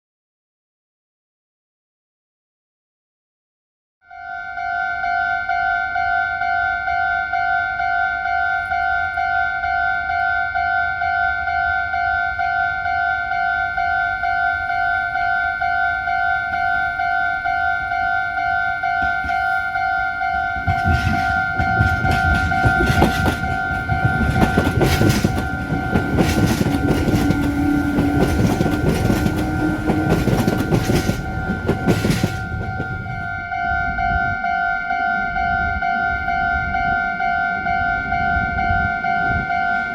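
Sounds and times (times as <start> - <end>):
level crossing warning bell: 4.1 - 39.9
train wheels clicking over rail joints: 13.2 - 33.5.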